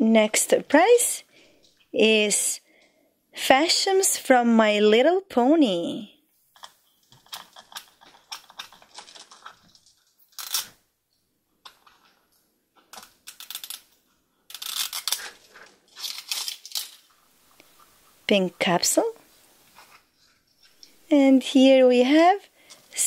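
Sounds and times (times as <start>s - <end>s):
plastic packaging crinkling: 6.6s - 10.8s, 14.5s - 17.1s.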